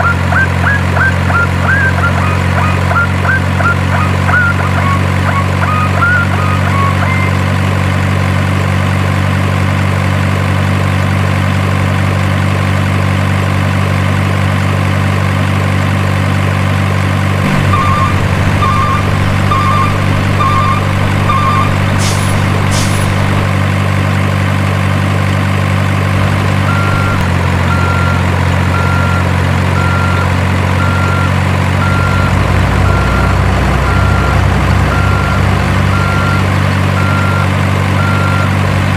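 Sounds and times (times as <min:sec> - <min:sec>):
reversing beeps: 0:00.0 - 0:07.5, 0:17.4 - 0:23.5, 0:26.6 - 0:38.6
diesel truck engine idling: 0:00.0 - 0:38.9
air-brake hisses: 0:22.0 - 0:23.4.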